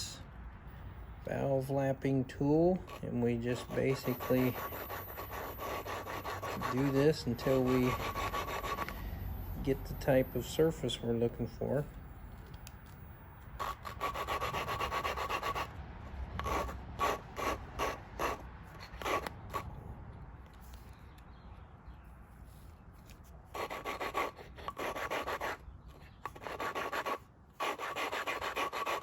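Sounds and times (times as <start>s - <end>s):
gritty rasping of valve grinding: 2.8s - 9.0s.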